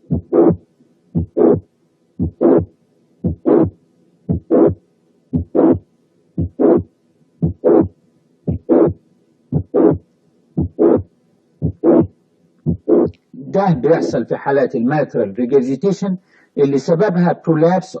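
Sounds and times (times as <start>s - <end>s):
heartbeat with murmur: 0.0s - 0.6s, 1.2s - 5.8s, 6.4s - 7.9s, 8.5s - 10.0s, 10.6s - 13.2s.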